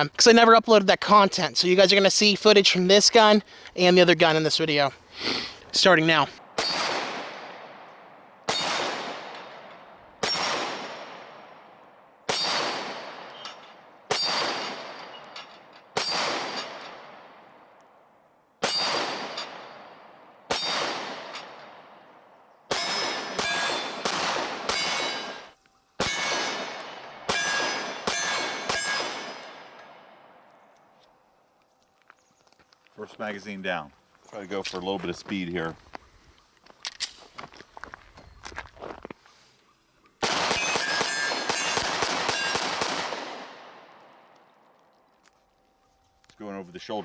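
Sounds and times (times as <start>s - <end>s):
pistol shots: 6.5s - 11.5s, 12.3s - 13.4s, 14.1s - 15.1s, 16.0s - 17.3s, 18.6s - 21.8s, 22.7s - 30.1s, 40.2s - 44.0s
steel targets ringing: 27.3s - 29.6s, 40.5s - 42.6s.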